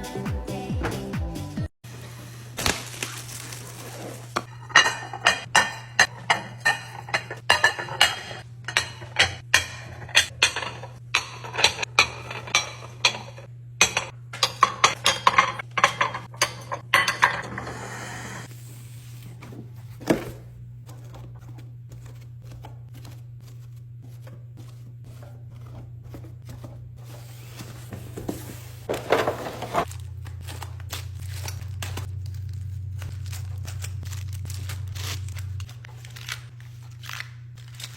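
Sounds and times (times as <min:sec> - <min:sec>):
steady low hum: 0:04.3 - 0:37.9
glass jars clinking: 0:04.5 - 0:17.7.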